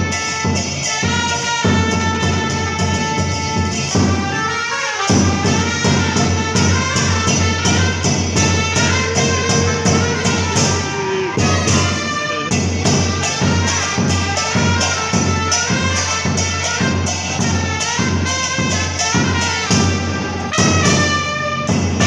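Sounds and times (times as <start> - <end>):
trumpets playing a cumbia melody: 0.0 - 22.0
bass drum beat: 5.1 - 15.9.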